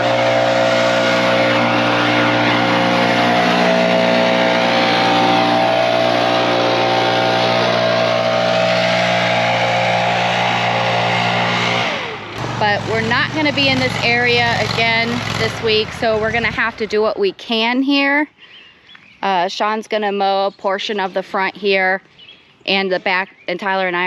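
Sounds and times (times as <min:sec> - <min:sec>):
small gas engine running: 0:00.0 - 0:17.2.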